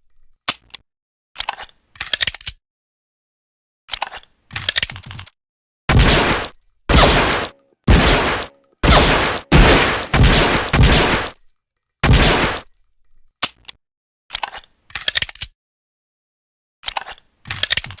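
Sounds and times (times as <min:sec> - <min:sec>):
pistol shots echoing: 0:05.9 - 0:11.4, 0:12.0 - 0:12.7.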